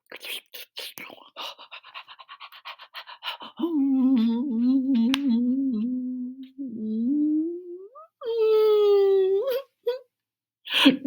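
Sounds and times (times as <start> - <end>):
person humming: 3.6 - 9.7.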